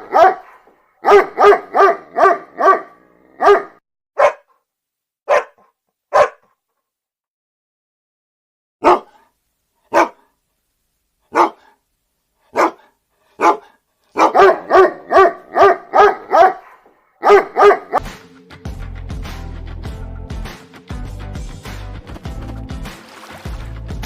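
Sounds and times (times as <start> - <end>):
dog barking: 0.0 - 4.6, 5.3 - 6.6, 8.8 - 9.3, 9.9 - 10.3, 11.3 - 11.8, 12.5 - 18.0
music: 18.0 - 24.0.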